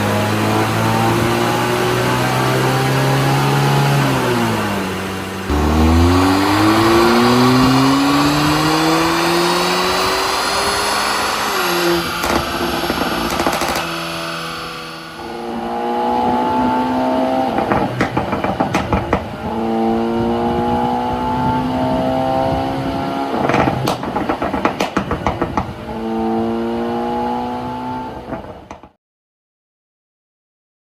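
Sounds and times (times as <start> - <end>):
car engine accelerating: 0.0 - 29.0
exhaust pops and crackles: 5.5 - 14.3, 17.4 - 19.7, 22.6 - 25.9, 28.2 - 29.0.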